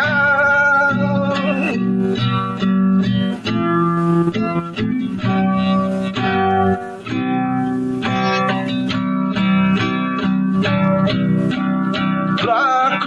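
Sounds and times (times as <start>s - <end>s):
bass notes: 0.0s - 12.5s
guitar picking a melody: 0.0s - 13.0s.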